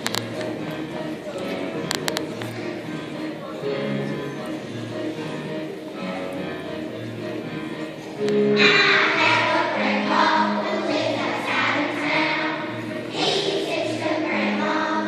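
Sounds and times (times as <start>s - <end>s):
choir singing: 8.5s - 15.0s.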